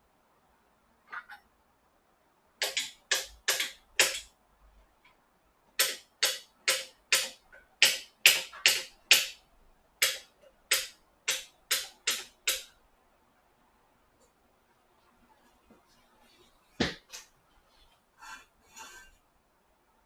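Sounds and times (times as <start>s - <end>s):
sharp knocks: 2.6s - 4.3s, 5.8s - 9.4s, 10.0s - 12.7s.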